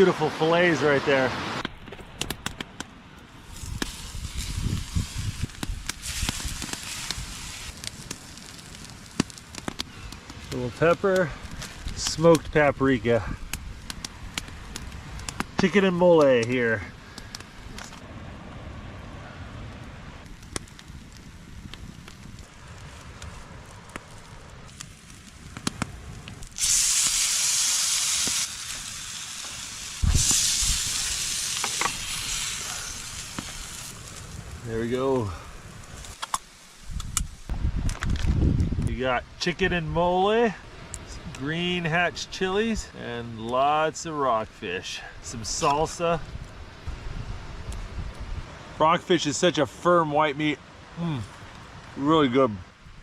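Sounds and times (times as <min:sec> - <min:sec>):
cooking fire crackling: 0:00.0 - 0:53.0
fish sizzling in a hot pan: 0:03.4 - 0:10.0, 0:26.5 - 0:34.4.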